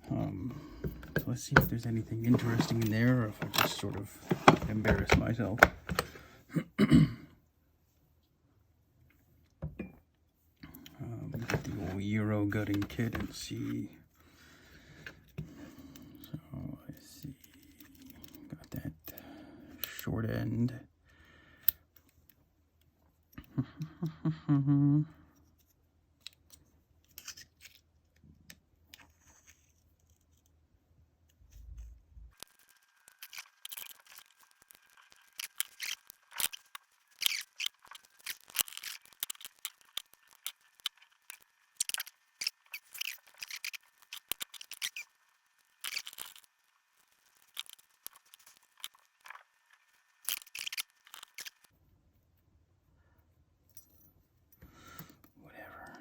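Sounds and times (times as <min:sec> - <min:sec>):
metallic clicks and scrapes: 0:00.7 - 0:06.2, 0:31.5 - 0:51.7.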